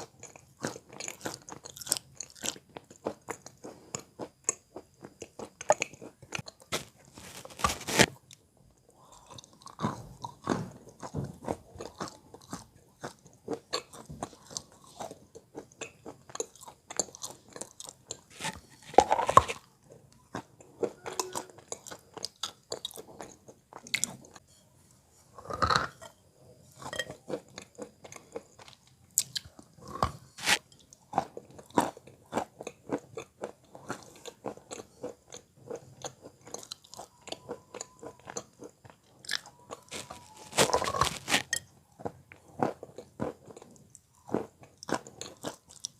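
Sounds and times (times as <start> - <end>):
chalk being bitten and chewed: 9.2 - 24.4, 26.7 - 45.9.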